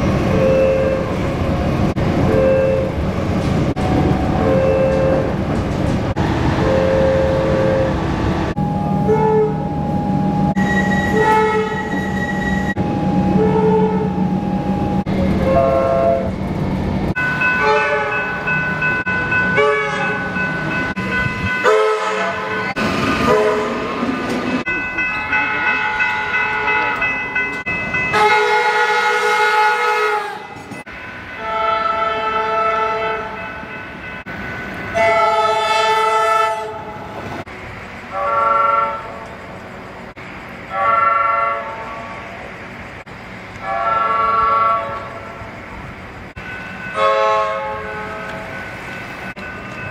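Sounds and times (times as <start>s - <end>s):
low train rumble: 0.0s - 49.9s
train horn blasts: 4.4s - 5.4s, 6.5s - 8.0s, 8.6s - 16.3s, 17.6s - 18.2s, 19.6s - 20.2s, 21.6s - 22.6s, 23.2s - 23.8s, 28.1s - 30.6s, 31.4s - 33.4s, 34.9s - 36.9s, 38.1s - 39.4s, 40.7s - 42.1s, 43.6s - 45.1s, 46.9s - 48.4s.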